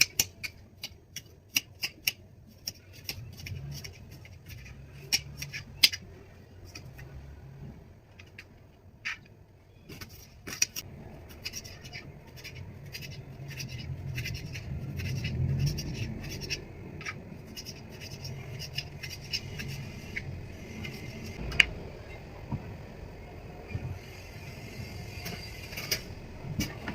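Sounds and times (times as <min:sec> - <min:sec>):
low hum: 0:10.8 - 0:26.9.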